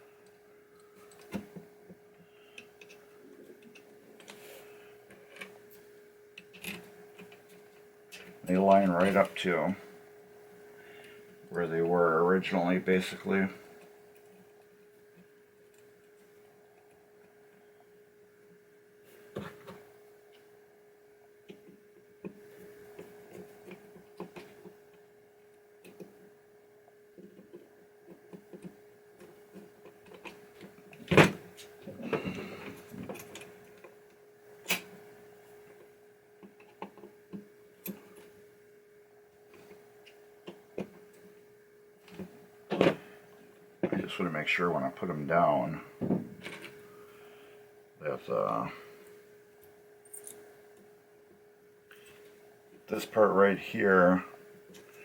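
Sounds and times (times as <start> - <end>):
steady hum: 0.0 - 55.0
small parts clicking and tapping: 0.2 - 4.4, 5.0 - 9.4, 21.4 - 25.1, 25.8 - 26.3, 27.1 - 38.4, 49.6 - 52.9.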